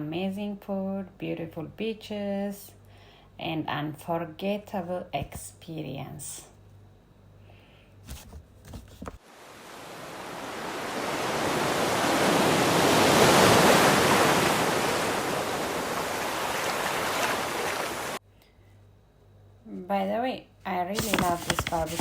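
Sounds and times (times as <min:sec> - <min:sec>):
sea wave rushing in: 0:09.3 - 0:18.2.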